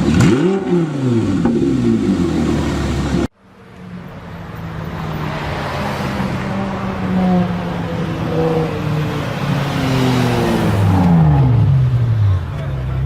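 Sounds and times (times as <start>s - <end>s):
sports car engine passing by: 4.7s - 13.0s.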